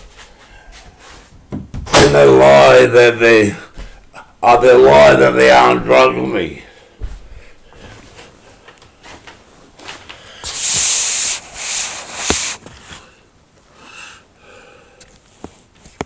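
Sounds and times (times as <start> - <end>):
rubbing scraping noise: 10.5 - 12.8.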